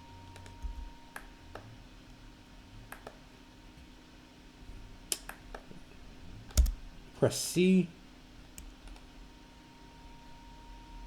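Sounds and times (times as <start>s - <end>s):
low steady hum: 0.0s - 11.0s
computer keys clicking: 0.3s - 1.7s, 6.5s - 6.8s.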